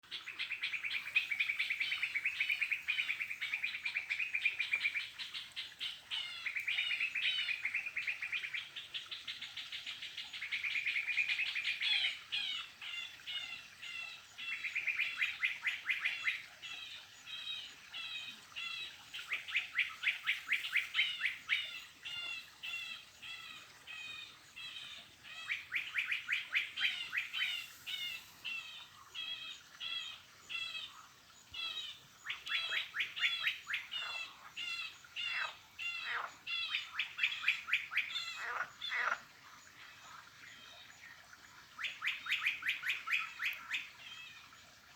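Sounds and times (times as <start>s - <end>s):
bird singing trills and chirps: 13.4s - 39.2s.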